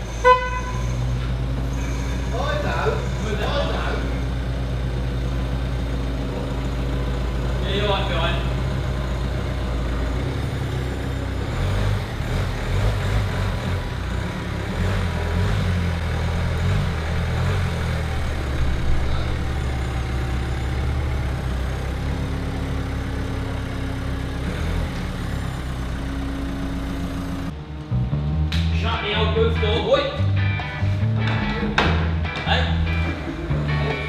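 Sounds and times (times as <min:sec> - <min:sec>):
car engine at low revs: 0:02.6 - 0:28.8.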